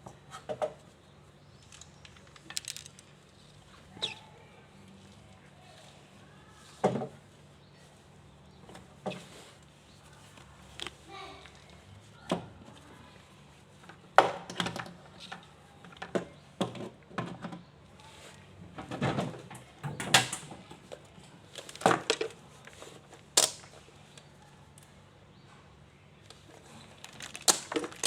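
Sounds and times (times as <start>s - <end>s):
tools clicking and knocking: 1.6s - 3.2s.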